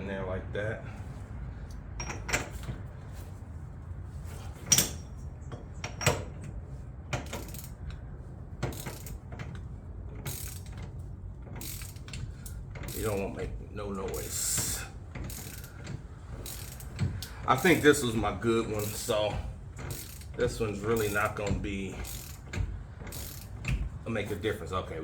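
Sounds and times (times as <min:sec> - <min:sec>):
torque wrench ratchet clicks: 0:07.2 - 0:08.0, 0:08.6 - 0:09.6, 0:10.2 - 0:10.9, 0:11.6 - 0:13.3, 0:14.2 - 0:24.0.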